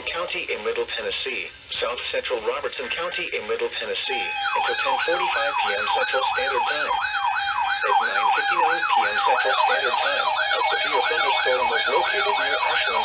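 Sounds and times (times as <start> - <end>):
weather radio voice: 0.0 - 7.1, 7.8 - 13.0
electronic siren yelping: 4.0 - 13.0.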